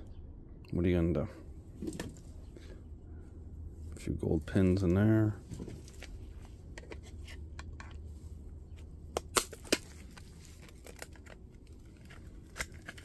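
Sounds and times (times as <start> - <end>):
low steady hum: 0.0 - 13.0
small parts clicking and clattering: 9.2 - 13.0.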